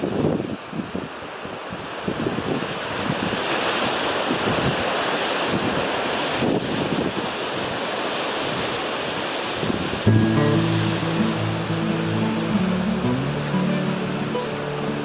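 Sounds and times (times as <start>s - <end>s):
ocean surf washing ashore: 10.1s - 15.0s.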